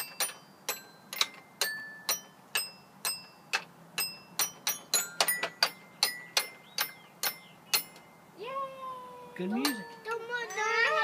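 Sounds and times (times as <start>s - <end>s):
toy xylophone notes: 0.0s - 8.8s, 9.4s - 11.0s.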